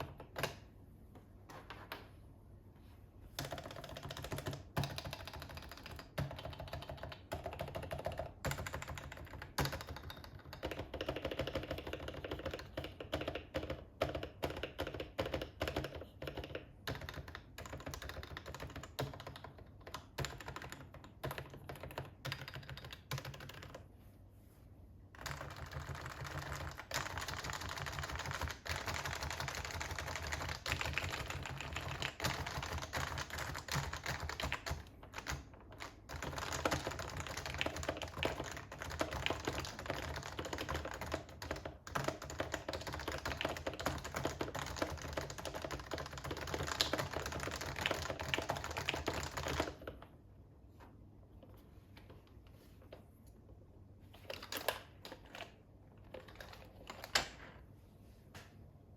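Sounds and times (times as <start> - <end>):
keyboard typing muted clacks: 3.4 - 23.9, 25.2 - 50.1.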